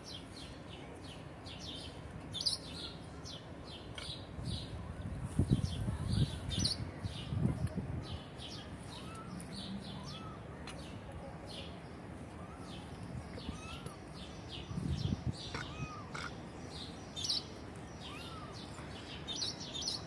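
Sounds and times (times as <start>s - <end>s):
small birds chirping: 0.0s - 20.0s
faint arching bird calls: 15.4s - 16.4s.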